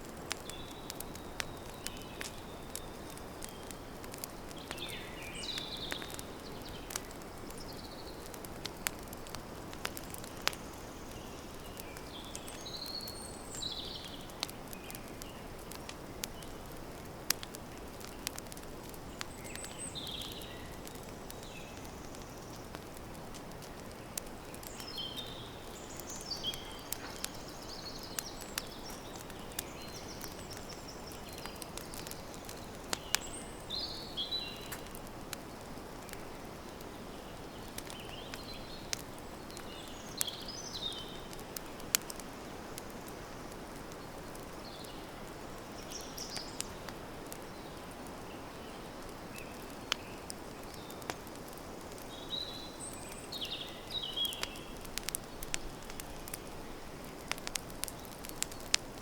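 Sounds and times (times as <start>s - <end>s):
campfire crackling and popping: 0.0s - 59.0s
birds chirping: 0.2s - 9.1s, 19.0s - 35.0s, 44.0s - 58.8s.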